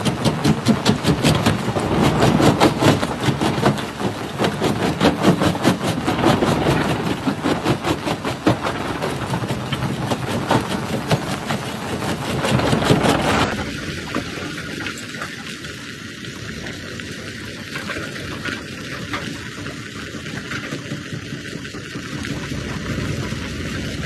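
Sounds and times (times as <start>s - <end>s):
crusher machine running: 0.0s - 15.7s, 21.5s - 24.0s
rock cracking in crusher: 0.0s - 15.8s.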